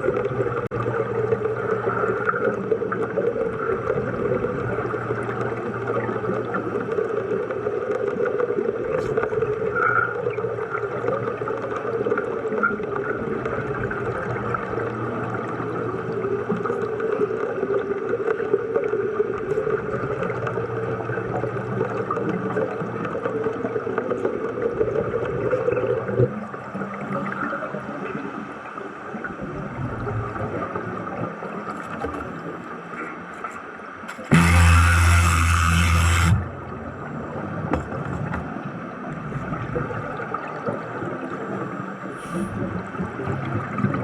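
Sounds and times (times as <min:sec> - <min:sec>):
welding arc crackling and buzzing: 0:34.3 - 0:36.5.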